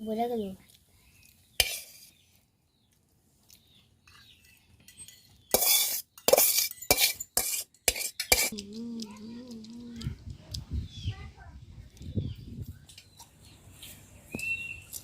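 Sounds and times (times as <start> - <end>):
metal utensils clinking on cookware: 4.3 - 8.6.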